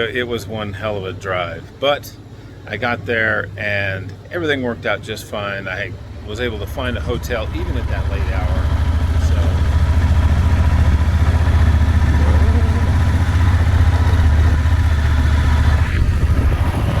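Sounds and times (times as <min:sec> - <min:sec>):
motorcycle engine running: 0:06.0 - 0:17.0.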